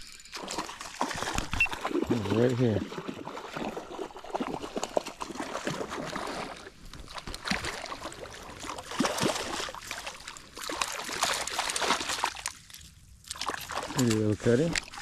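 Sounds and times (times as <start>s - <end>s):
fish thrashing splashing water: 0.0s - 15.0s.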